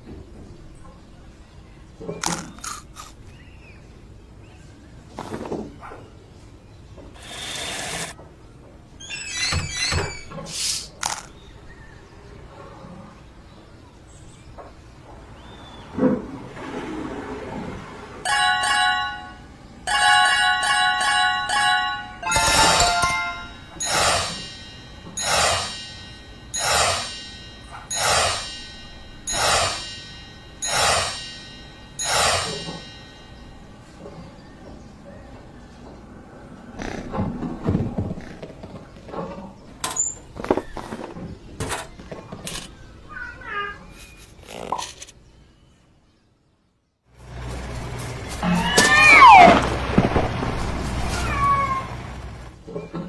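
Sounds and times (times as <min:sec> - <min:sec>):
short hiss: 0:10.4 - 0:11.0
cartoon whoosh: 0:48.4 - 0:49.7
high-pitched squeals: 0:48.4 - 0:49.7.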